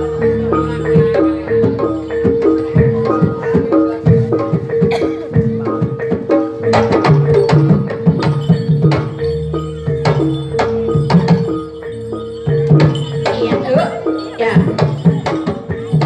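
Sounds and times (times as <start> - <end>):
hand drums playing busy rhythm: 0.0 - 16.0
metallophone notes: 0.0 - 16.0.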